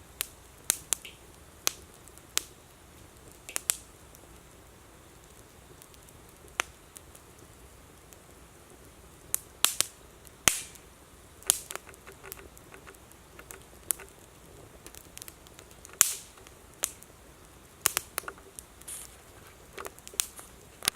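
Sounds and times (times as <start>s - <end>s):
campfire crackling and popping: 0.0s - 20.9s.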